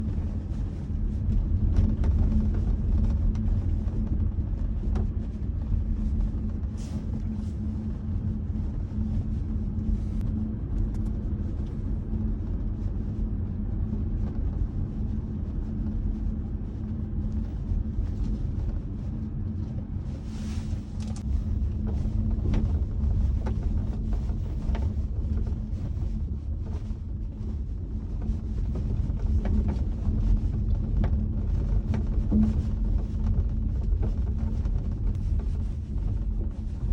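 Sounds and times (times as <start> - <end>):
road and drivetrain rumble: 0.0 - 36.9.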